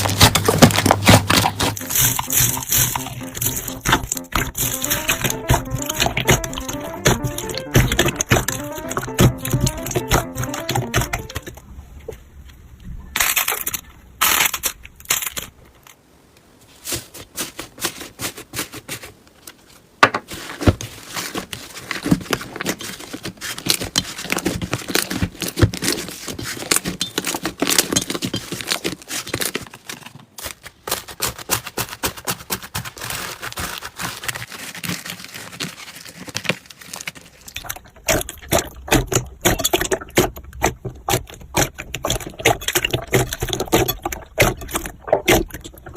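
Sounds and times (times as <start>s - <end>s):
slime crackling and popping: 0.0s - 11.6s.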